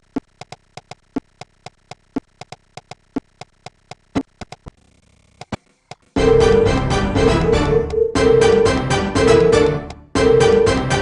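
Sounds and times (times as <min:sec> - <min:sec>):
synthesized percussion clicks: 0:00.0 - 0:04.7.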